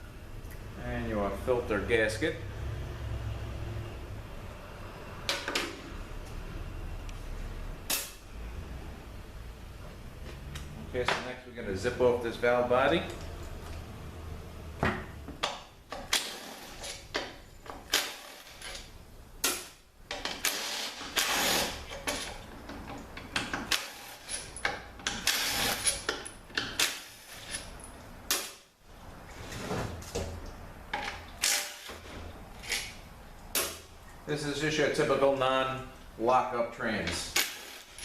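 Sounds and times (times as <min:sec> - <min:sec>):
hand tool bursts: 0:37.3 - 0:38.0.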